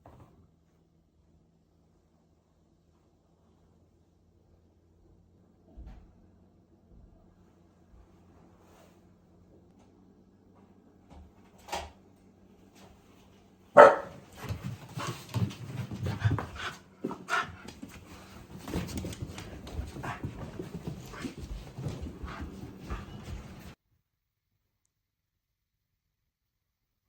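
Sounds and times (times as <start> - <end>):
dog vocalising excitedly: 13.8 - 14.3.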